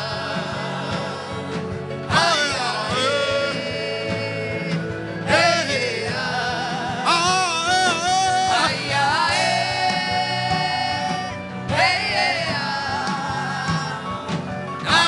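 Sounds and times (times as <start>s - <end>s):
solo voice singing with vibrato: 0.0s - 15.0s
sustained instrumental accompaniment: 0.0s - 15.0s.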